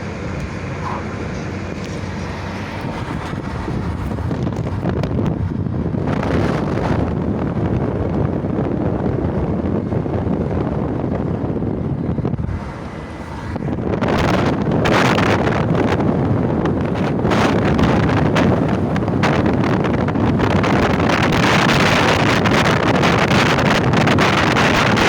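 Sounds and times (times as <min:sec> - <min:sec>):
wind buffeting microphone: 0:00.0 - 0:25.0.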